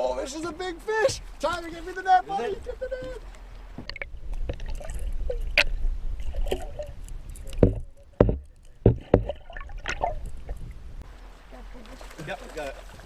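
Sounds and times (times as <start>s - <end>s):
water splashing against boat: 0.3s - 13.0s
steady low rumble: 3.6s - 11.2s
sharp knocks: 7.6s - 10.0s.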